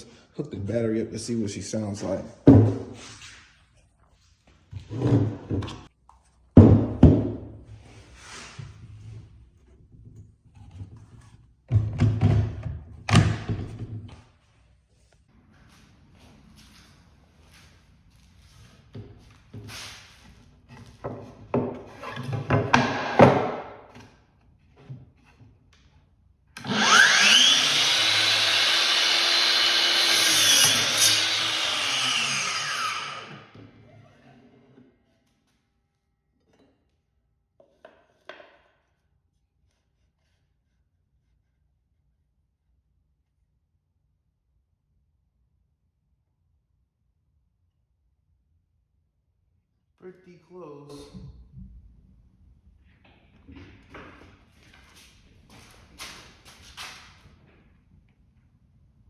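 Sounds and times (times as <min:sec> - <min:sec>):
miter saw motor starting: 0:26.6 - 0:33.5.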